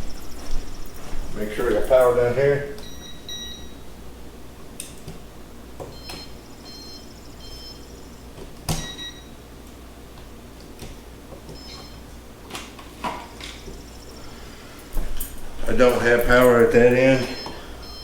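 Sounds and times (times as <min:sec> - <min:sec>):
steady low hum: 0:00.0 - 0:18.0
electrical tester clicks and taps: 0:05.8 - 0:06.8.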